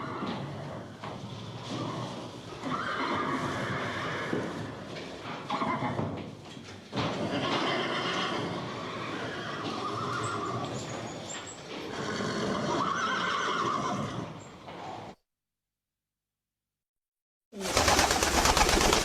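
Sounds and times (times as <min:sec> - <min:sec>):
horse neighing: 0:00.0 - 0:04.9, 0:05.5 - 0:06.1, 0:07.1 - 0:15.2.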